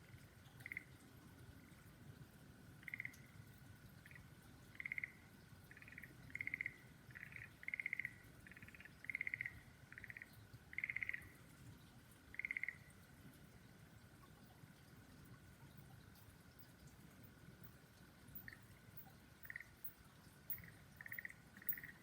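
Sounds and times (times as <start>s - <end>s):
frog croaking: 0.6s - 0.9s, 2.8s - 3.2s, 4.0s - 11.3s, 12.3s - 12.8s, 19.4s - 19.8s, 20.5s - 22.0s.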